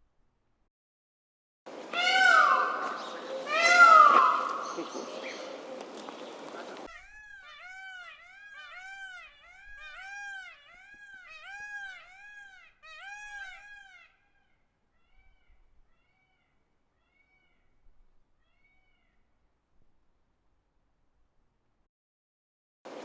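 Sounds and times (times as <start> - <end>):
peafowl calling: 1.7 - 14.2.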